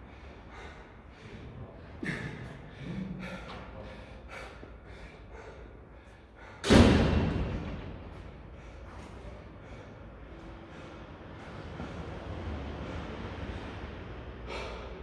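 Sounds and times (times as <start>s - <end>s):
person panting hard: 0.0s - 6.7s, 8.4s - 11.8s, 13.6s - 15.0s.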